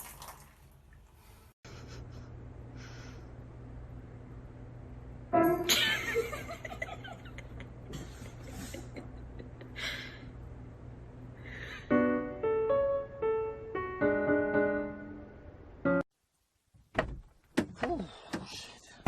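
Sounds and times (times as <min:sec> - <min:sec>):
piano single notes: 0:05.3 - 0:05.7.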